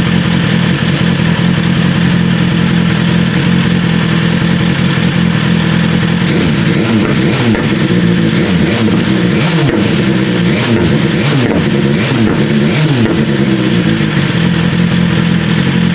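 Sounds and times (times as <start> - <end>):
exhaust pops and crackles: 0.0 - 15.9
motorcycle engine revving: 0.0 - 15.9.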